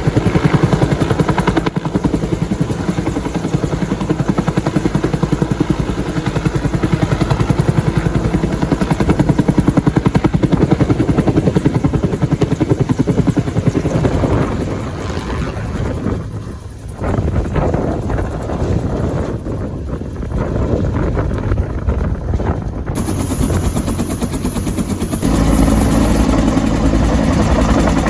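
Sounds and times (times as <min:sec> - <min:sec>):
helicopter rotor thumping: 0:00.0 - 0:14.1, 0:23.0 - 0:28.0.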